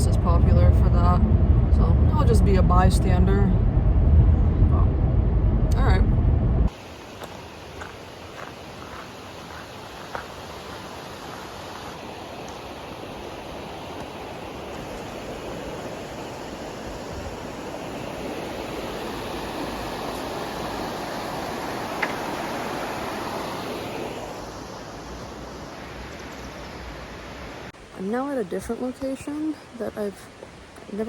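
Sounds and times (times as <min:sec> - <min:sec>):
river water rushing: 0:06.7 - 0:27.8.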